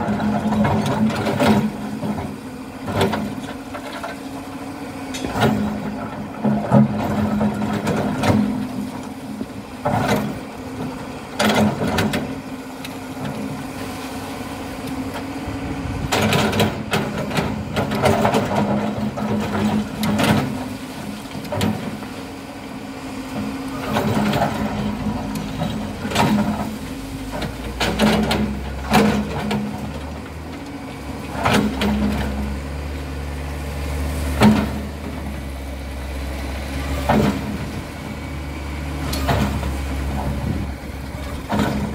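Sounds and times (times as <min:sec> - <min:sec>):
diesel engine running: 0:00.0 - 0:41.9
metal clanks and knocks: 0:23.4 - 0:30.2, 0:39.0 - 0:41.9.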